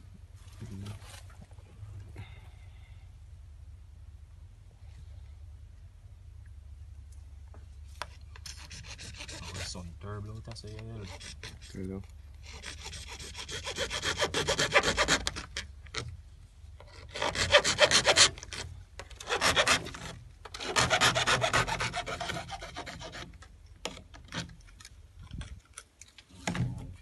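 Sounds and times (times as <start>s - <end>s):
hand saw rasping: 8.4s - 9.9s, 10.6s - 15.7s, 16.8s - 24.5s.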